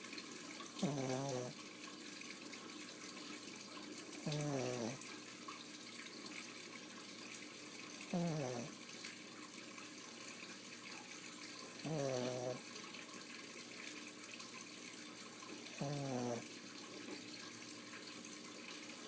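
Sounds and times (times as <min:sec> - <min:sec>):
dog snoring: 0:00.8 - 0:01.6, 0:04.2 - 0:05.0, 0:08.1 - 0:08.8, 0:11.8 - 0:12.6, 0:15.7 - 0:16.5.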